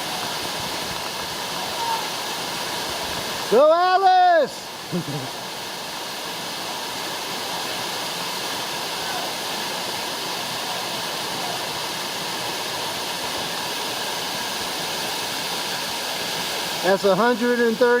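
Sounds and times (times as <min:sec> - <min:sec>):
waterfall roaring: 0:00.0 - 0:18.0.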